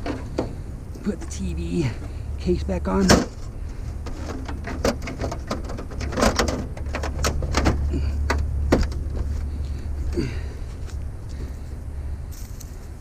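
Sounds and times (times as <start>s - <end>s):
steady low rumble: 0.0s - 13.0s
plastic case clicking and rattling: 4.0s - 9.3s.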